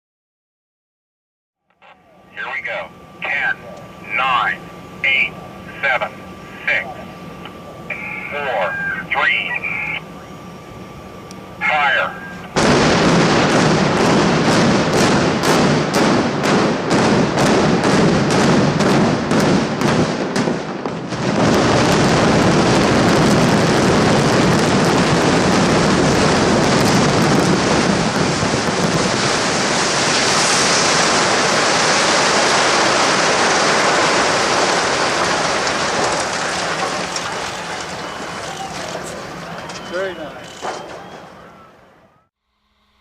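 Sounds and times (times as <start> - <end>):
explosive charge detonations: 12.1 - 39.3
building collapsing rumble: 12.6 - 39.4.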